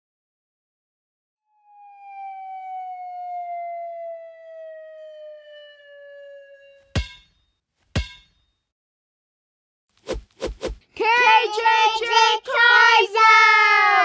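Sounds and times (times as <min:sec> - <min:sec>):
whistle-like tone gliding downward: 0:01.5 - 0:06.9.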